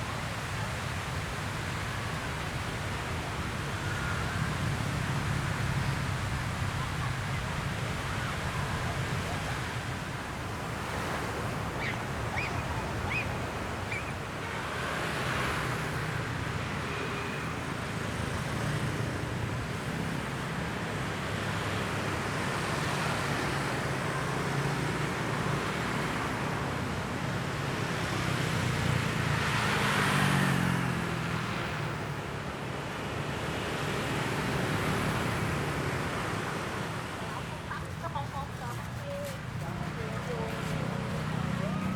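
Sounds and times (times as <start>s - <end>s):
road traffic hum: 0.0s - 41.9s
surf washing on beach: 0.0s - 41.9s
vehicle passing close: 27.4s - 32.2s, 33.1s - 41.9s.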